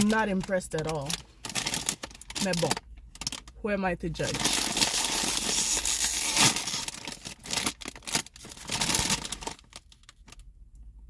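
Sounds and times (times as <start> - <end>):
bag crinkling: 0.0 - 3.5, 4.2 - 10.4
chip bag tearing open: 4.3 - 10.4.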